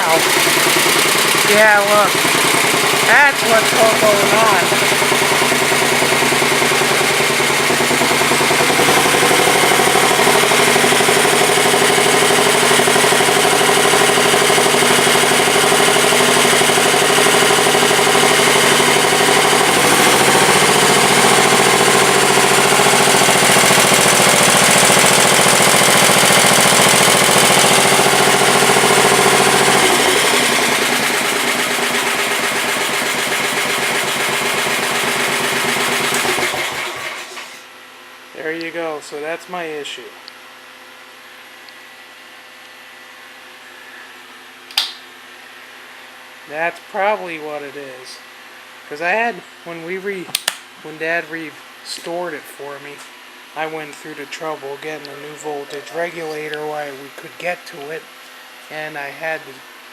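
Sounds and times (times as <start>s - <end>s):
garden tractor engine running: 0.0s - 37.7s, 53.6s - 59.4s.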